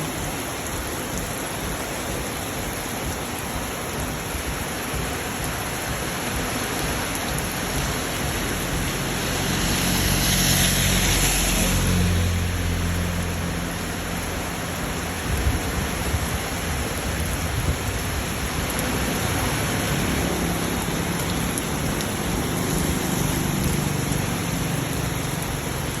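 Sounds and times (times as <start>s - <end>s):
heavy rain pouring: 0.0s - 26.0s
strong wind rumbling: 13.4s - 25.9s.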